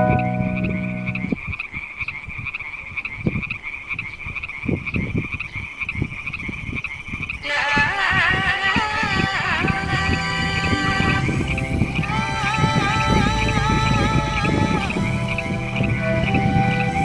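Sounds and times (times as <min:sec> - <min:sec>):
piano tune: 0:00.0 - 0:01.3
frogs trilling: 0:00.0 - 0:17.0.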